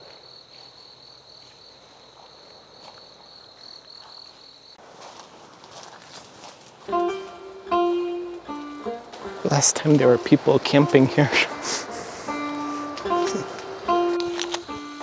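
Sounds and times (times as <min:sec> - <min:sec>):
faint rustle: 0:03.9 - 0:06.9.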